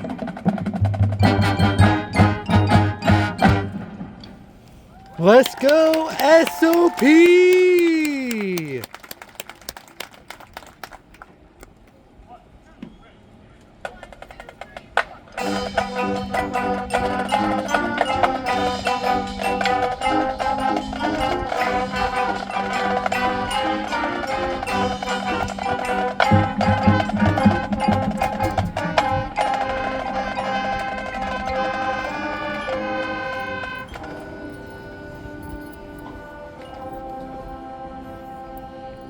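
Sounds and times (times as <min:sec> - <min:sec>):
mallet percussion and drums: 0:00.0 - 0:04.0, 0:15.4 - 0:30.1
marching band playing: 0:00.0 - 0:04.2, 0:05.2 - 0:08.9, 0:15.4 - 0:36.9.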